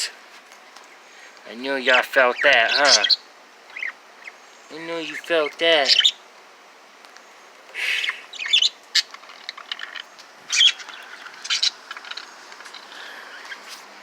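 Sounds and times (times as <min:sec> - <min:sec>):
pet birds chirping and squawking: 0:01.2 - 0:06.2, 0:07.8 - 0:13.9.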